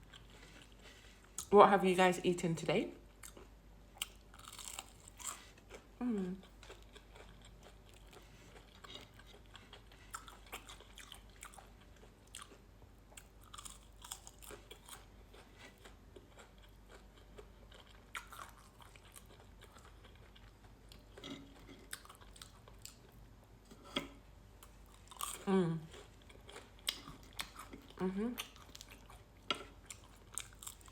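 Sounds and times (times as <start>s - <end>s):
person chewing crunchy food: 0.0s - 1.5s, 3.1s - 30.9s.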